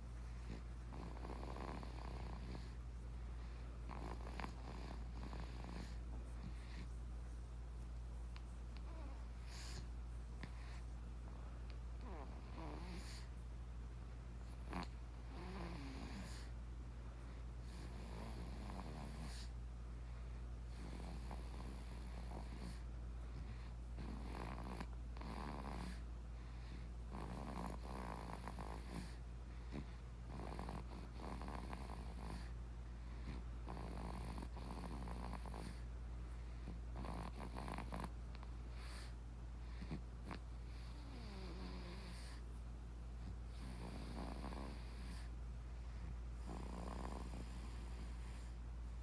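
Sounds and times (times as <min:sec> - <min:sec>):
steady low hum: 0:00.0 - 0:49.0
baby snoring: 0:00.9 - 0:02.8, 0:03.9 - 0:06.0, 0:12.0 - 0:13.3, 0:14.6 - 0:16.5, 0:17.7 - 0:19.5, 0:24.0 - 0:26.0, 0:27.1 - 0:29.2, 0:30.3 - 0:32.5, 0:33.6 - 0:35.8, 0:37.0 - 0:38.1, 0:39.8 - 0:42.4, 0:43.5 - 0:45.3, 0:46.4 - 0:48.5.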